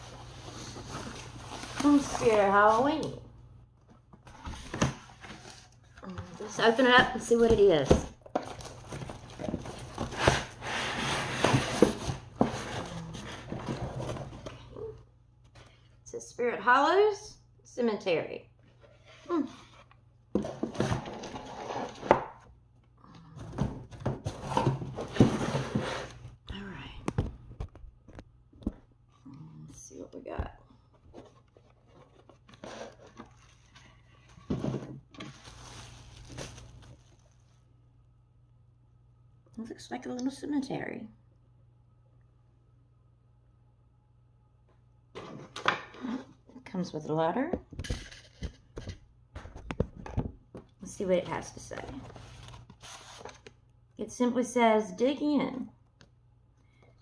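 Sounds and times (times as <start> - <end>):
cardboard box rustling and scraping: 8.4 - 14.6, 20.4 - 22.2, 23.5 - 26.2, 31.0 - 37.4, 51.9 - 53.5
sliding scrape: 10.1 - 14.1, 21.0 - 22.1, 24.3 - 26.2
cardboard rustling and tearing: 35.2 - 37.4, 51.9 - 53.5.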